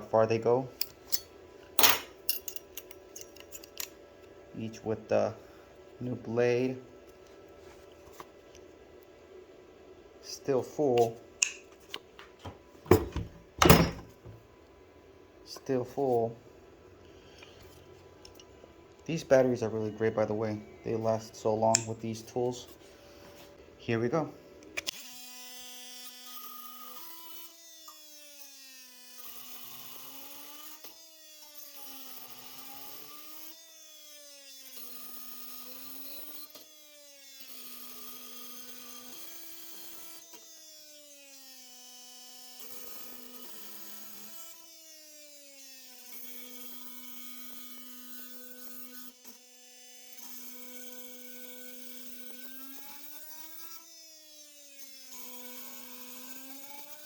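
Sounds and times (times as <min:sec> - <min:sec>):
oscillating multi-tool buzzing: 0:24.8 - 0:57.0.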